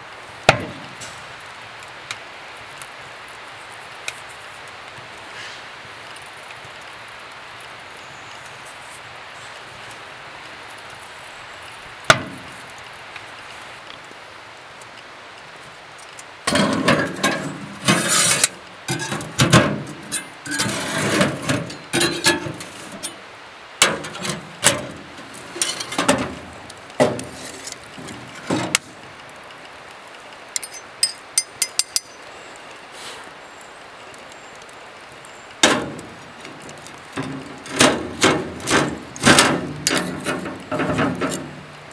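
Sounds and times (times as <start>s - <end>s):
knocks and scraping in food prep: 16.5s - 23.2s, 23.8s - 28.9s, 35.6s - 41.7s.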